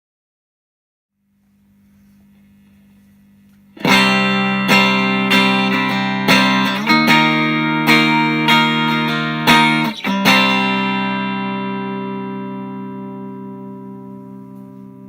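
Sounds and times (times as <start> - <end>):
electric guitar strummed chords: 3.8 - 15.0.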